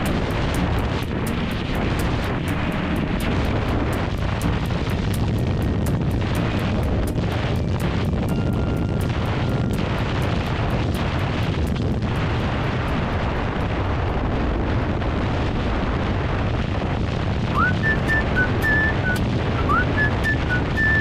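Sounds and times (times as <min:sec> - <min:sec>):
wind buffeting microphone: 0:00.0 - 0:21.0
whistled melody music: 0:17.5 - 0:21.0.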